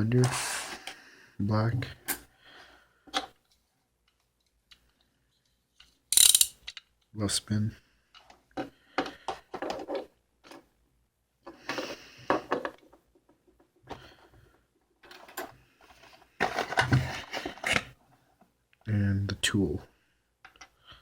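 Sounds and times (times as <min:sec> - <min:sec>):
cardboard and plastic packaging rustling: 0:15.0 - 0:17.9.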